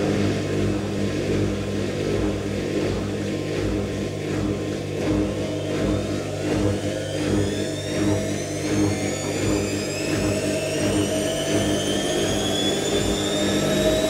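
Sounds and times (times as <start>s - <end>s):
motor whine rising in pitch: 0.0s - 14.0s
washing machine spinning: 0.0s - 14.0s.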